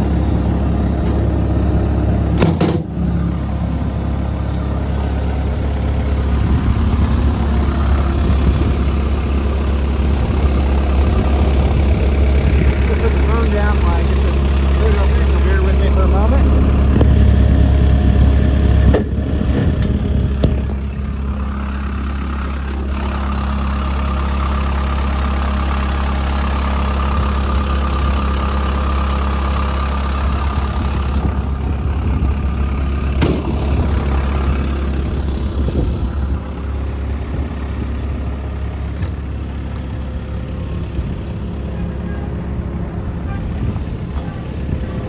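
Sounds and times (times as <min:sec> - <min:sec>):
diesel engine idling: 0:00.0 - 0:45.0.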